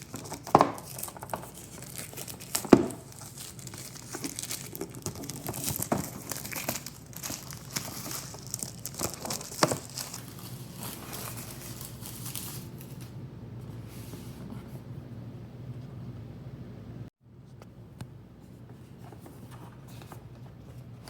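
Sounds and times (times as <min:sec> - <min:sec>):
packaging crinkling and tearing: 0:00.0 - 0:13.1.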